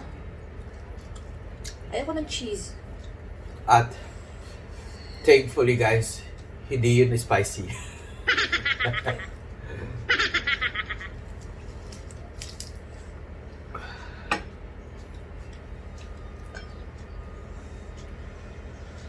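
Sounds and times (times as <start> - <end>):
low steady hum: 0.0 - 19.0
rapidly pulsing giggle: 7.7 - 11.2.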